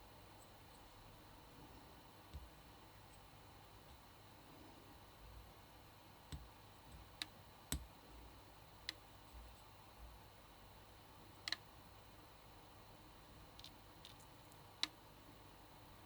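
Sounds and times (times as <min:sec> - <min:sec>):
faint sharp clicks and taps: 0:02.3 - 0:04.0, 0:06.3 - 0:07.9, 0:11.4 - 0:11.6, 0:13.5 - 0:15.0.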